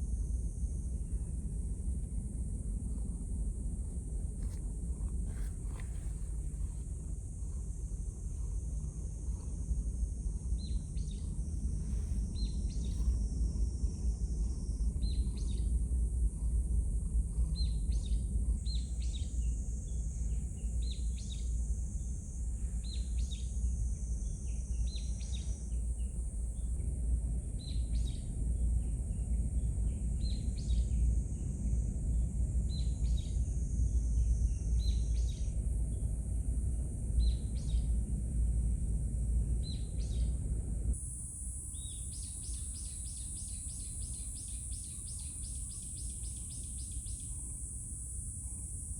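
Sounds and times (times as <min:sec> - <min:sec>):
steady low rumble: 0:00.0 - 0:33.6, 0:34.2 - 0:48.9
thin high hiss: 0:41.0 - 0:48.9
bird chirping: 0:41.5 - 0:48.2.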